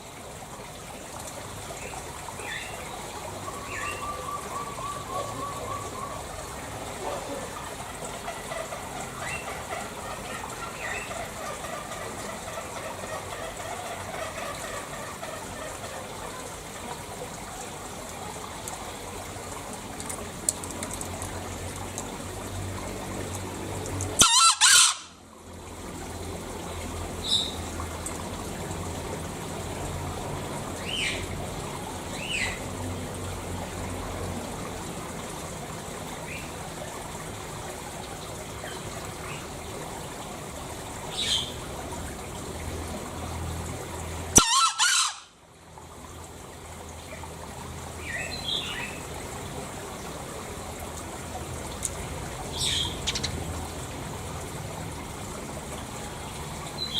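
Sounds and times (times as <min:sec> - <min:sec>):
sharp high-pitched bird calls: 0:24.2 - 0:25.1, 0:44.4 - 0:45.2, 0:52.6 - 0:53.4
junglefowl crowing: 0:24.2 - 0:25.2, 0:44.4 - 0:45.3.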